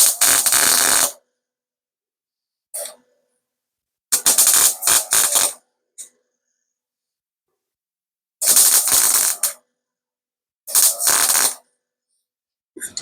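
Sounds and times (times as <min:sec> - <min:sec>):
welder crackling: 0:00.0 - 0:01.2, 0:04.1 - 0:05.6, 0:08.4 - 0:09.6, 0:10.7 - 0:11.6.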